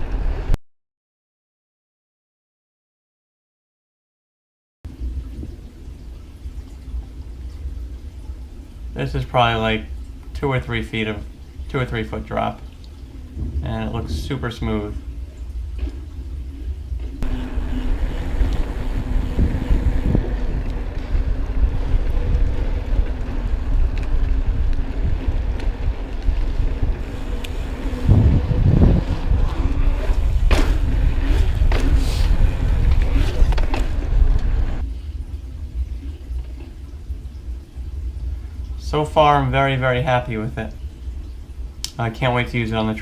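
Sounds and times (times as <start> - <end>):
steady hum: 4.9 - 43.0
wind buffeting microphone: 12.9 - 34.9
heavy thump: 13.4 - 14.4
bike knocks and rattles: 17.2 - 34.8.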